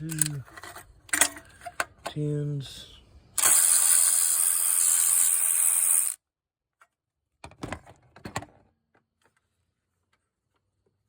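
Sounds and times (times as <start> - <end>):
ratchet clicking: 3.4 - 6.2.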